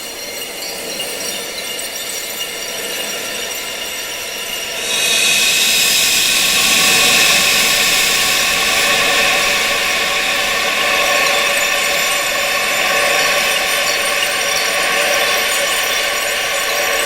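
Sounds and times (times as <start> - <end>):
steady rushing wind noise: 4.2 - 15.6.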